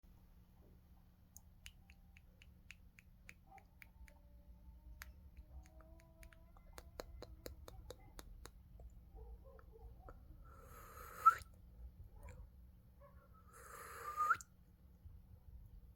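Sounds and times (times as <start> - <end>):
bird beak clicking: 5.0 - 8.6.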